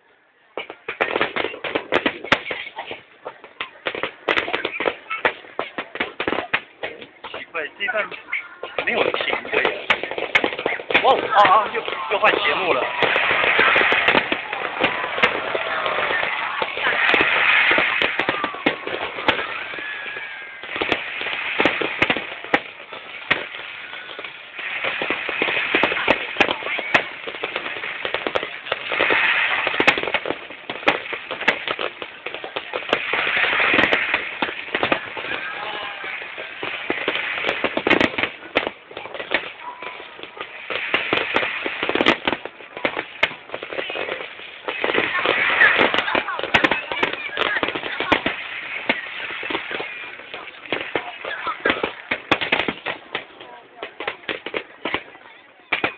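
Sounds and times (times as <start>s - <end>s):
fireworks bangs and crackling: 0.0s - 55.9s
firework whistle: 12.0s - 22.6s.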